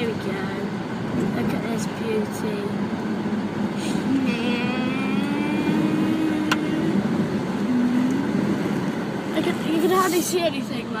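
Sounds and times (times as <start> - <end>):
road noise: 0.0 - 11.0.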